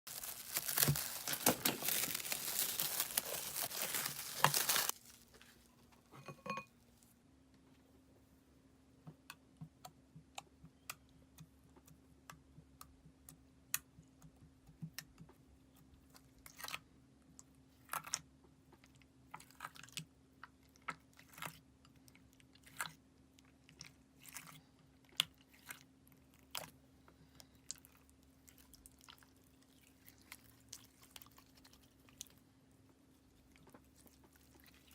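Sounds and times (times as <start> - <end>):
dense crackling: 0.1 - 5.0.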